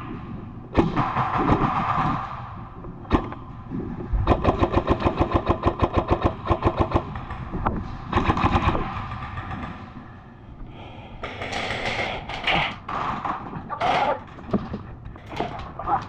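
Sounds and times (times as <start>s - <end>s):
airsoft gun firing full auto: 0.8s - 2.5s, 4.3s - 7.5s, 11.2s - 14.3s.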